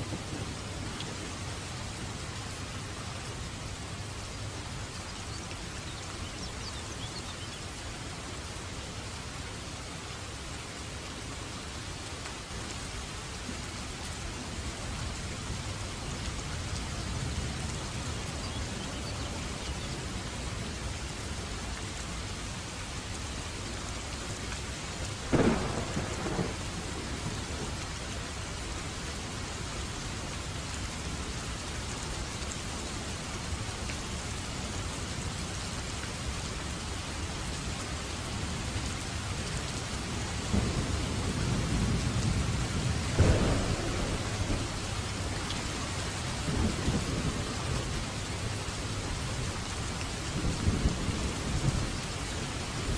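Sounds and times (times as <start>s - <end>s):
heavy rain: 0.0s - 52.9s
sharp thunderclap: 25.3s - 27.3s, 40.5s - 45.3s
low rumbling thunder: 25.3s - 27.8s, 40.5s - 48.6s, 50.3s - 52.1s.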